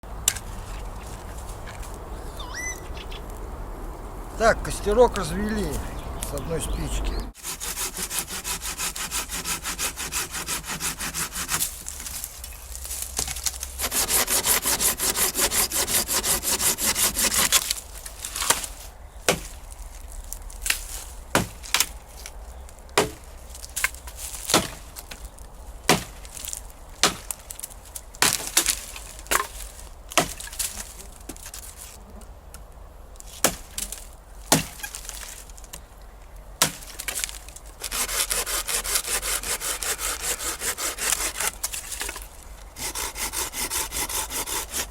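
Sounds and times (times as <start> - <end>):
fast rasping on dry wood: 7.4 - 11.8, 13.8 - 17.6, 37.8 - 41.7, 42.8 - 44.9
sharp wood cracks: 7.5 - 44.9.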